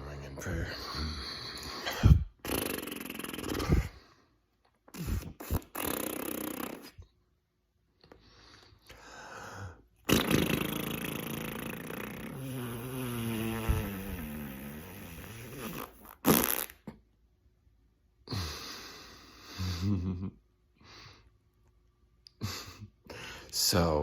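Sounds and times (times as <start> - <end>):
low wavering vocal sound: 0.0 - 2.2.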